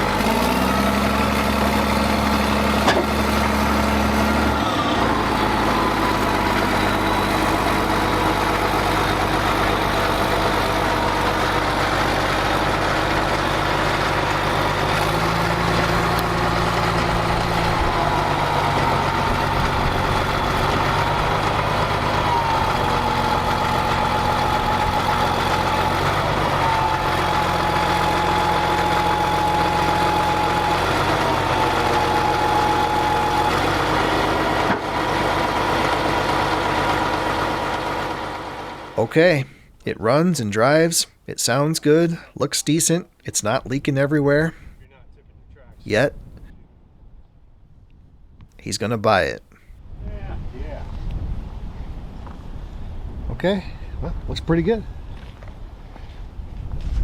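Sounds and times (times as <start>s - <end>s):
diesel engine running: 0.0s - 44.8s.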